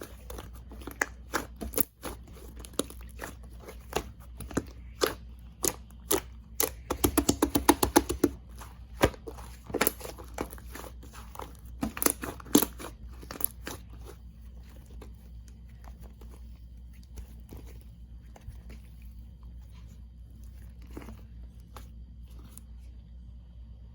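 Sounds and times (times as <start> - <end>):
slime crackling and popping: 0.0 - 14.2.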